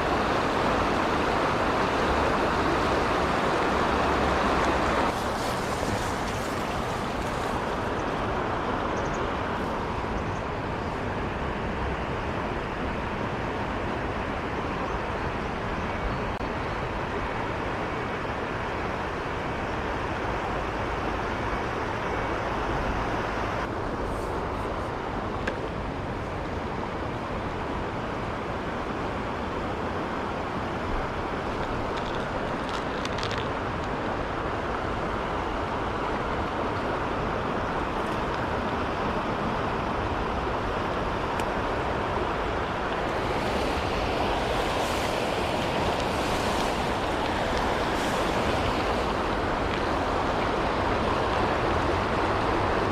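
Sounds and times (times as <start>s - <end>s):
stream rushing over rocks: 0.0s - 14.4s, 27.4s - 52.9s.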